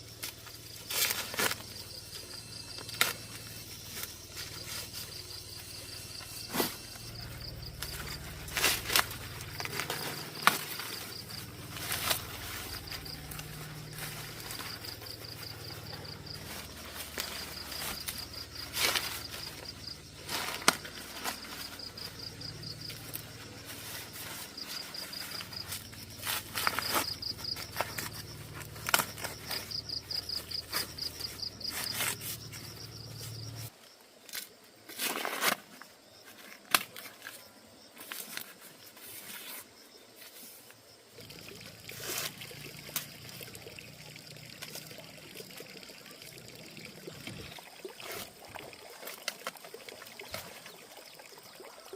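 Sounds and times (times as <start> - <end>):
insects chirping: 0.0 - 51.9
low steady hum: 1.6 - 33.7.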